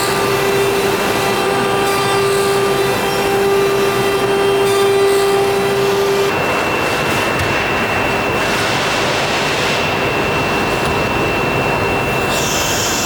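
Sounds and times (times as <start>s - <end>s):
cnc router machine whine: 0.0s - 13.0s
broad rushing noise: 5.8s - 13.0s.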